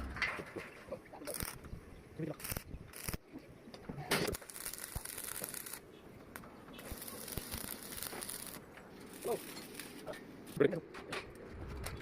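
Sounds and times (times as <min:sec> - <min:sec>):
arc welding crackling hiss: 0:01.2 - 0:01.6, 0:02.2 - 0:03.2, 0:04.3 - 0:10.6.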